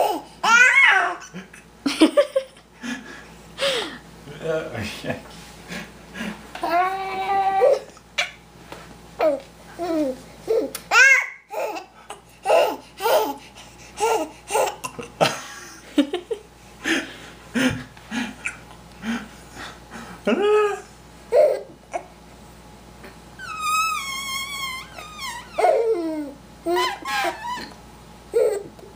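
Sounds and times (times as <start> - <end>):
baby whining: 0.0 - 1.3, 6.6 - 8.3, 23.4 - 28.7
baby laughing: 0.0 - 2.5, 9.2 - 13.4, 14.0 - 15.3, 20.4 - 22.1, 23.5 - 28.7.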